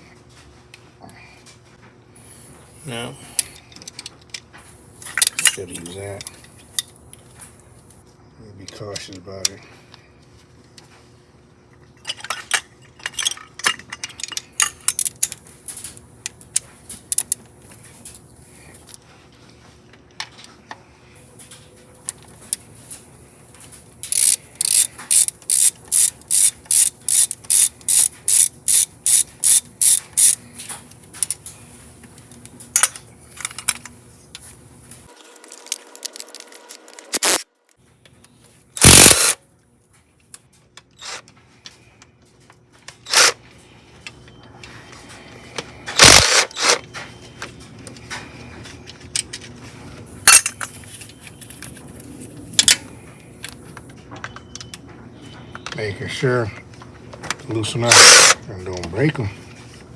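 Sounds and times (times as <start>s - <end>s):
socket ratchet clicking: 24.1s - 30.4s, 38.8s - 39.4s, 46.0s - 46.8s.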